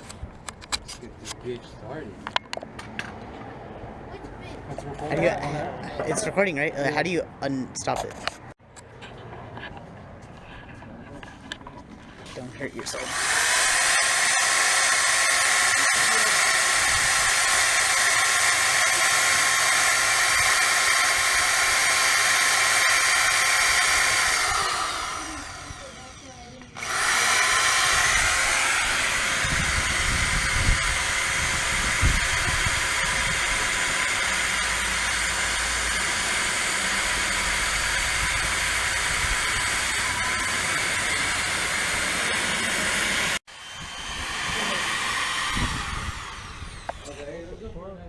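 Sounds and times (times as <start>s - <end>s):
small electric motor whirring: 12.7s - 47.8s.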